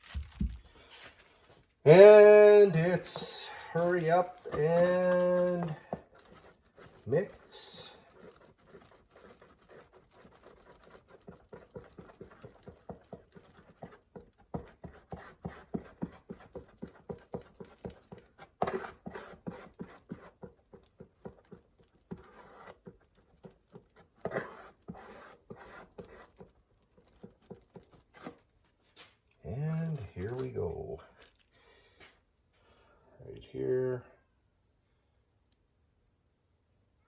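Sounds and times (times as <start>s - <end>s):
mixing stick stirring filler: 0.8s - 28.6s.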